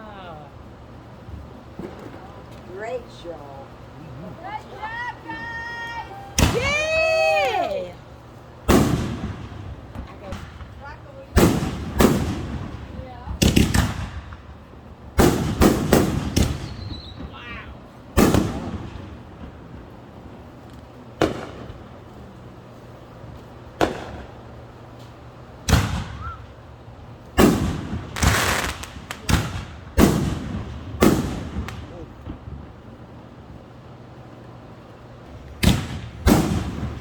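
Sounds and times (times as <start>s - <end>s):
fireworks bangs with echo: 8.6s - 22.2s, 23.2s - 24.5s, 25.6s - 26.7s, 27.3s - 33.0s, 35.3s - 37.0s.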